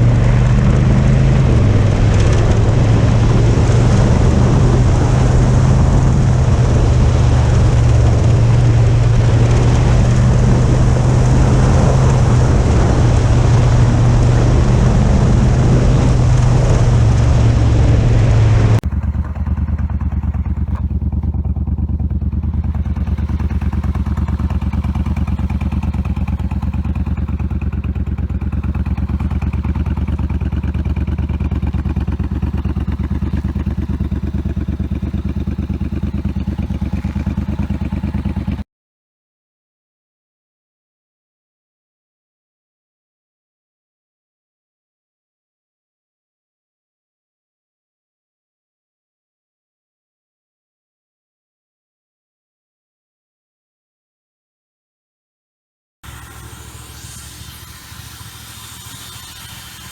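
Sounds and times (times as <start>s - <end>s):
large engine droning loudly: 0.0s - 38.6s, 56.0s - 59.9s
low engine hum: 0.0s - 38.6s, 56.0s - 59.9s
harsh high noise: 56.0s - 59.9s.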